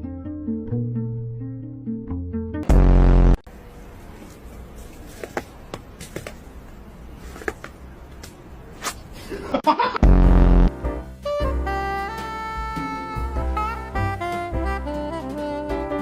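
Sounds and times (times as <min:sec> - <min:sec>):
low background noise: 0:03.5 - 0:10.0.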